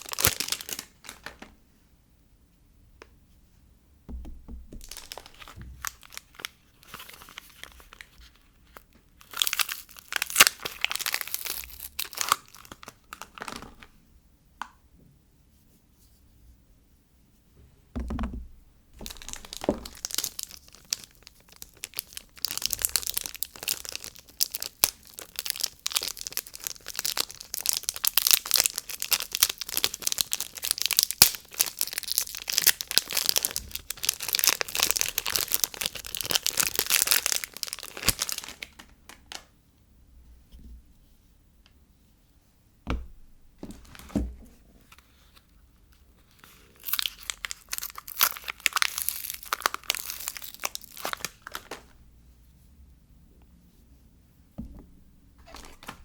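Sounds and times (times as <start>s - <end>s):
packaging crinkling and tearing: 0.0s - 1.5s, 4.8s - 13.9s, 19.0s - 39.5s, 43.7s - 44.2s, 44.8s - 52.0s, 55.4s - 56.0s
soft thuds: 4.1s - 5.9s, 17.6s - 20.0s, 42.8s - 44.6s, 54.6s - 56.0s.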